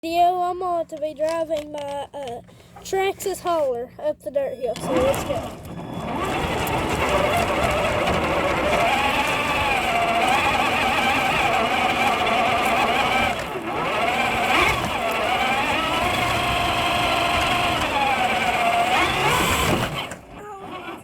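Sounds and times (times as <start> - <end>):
rc truck motor whining: 4.6 - 21.0.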